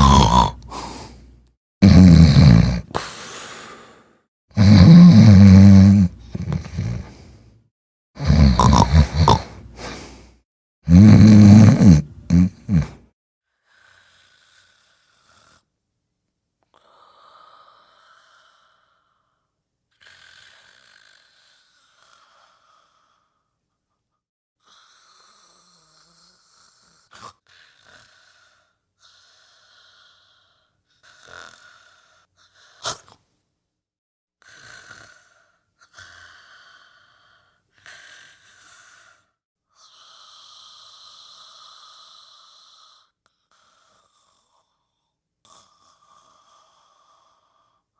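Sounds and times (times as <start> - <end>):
sharp snort: 0.0 - 1.2, 1.8 - 4.0, 4.6 - 7.4, 8.2 - 13.0, 32.7 - 33.2
person snoring: 0.0 - 7.4, 8.2 - 13.0.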